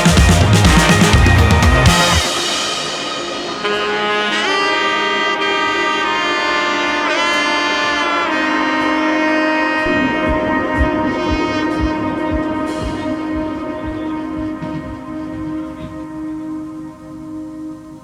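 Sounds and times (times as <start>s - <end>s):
low steady drum beat: 0.0s - 3.9s, 9.9s - 16.2s.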